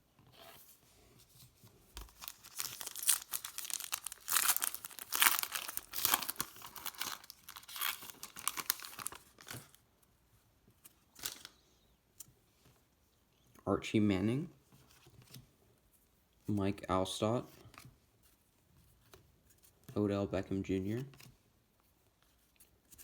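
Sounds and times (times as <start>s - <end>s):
foil wrapper tearing and crinkling: 2.1s - 9.8s.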